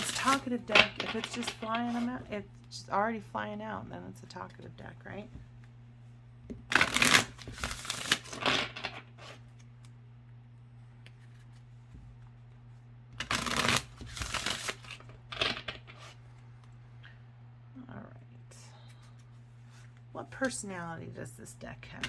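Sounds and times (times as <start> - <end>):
cards being shuffled: 0.0 - 2.2, 6.5 - 9.9, 13.2 - 16.2
steady low hum: 0.0 - 22.0.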